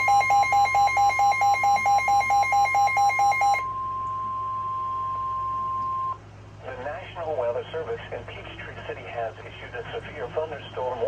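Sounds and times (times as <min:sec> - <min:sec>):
lower pulsing beep: 0:00.0 - 0:06.2
steady loud alarm tone: 0:00.0 - 0:06.2.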